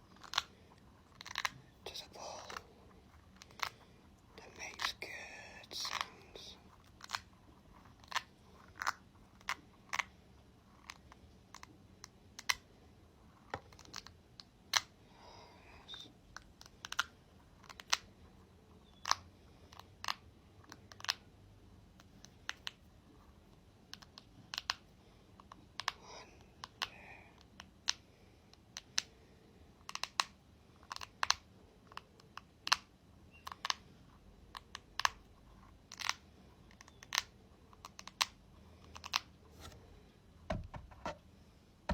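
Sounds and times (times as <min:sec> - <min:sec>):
tapping and clicking on a ball: 0:23.9 - 0:26.0, 0:40.5 - 0:41.2.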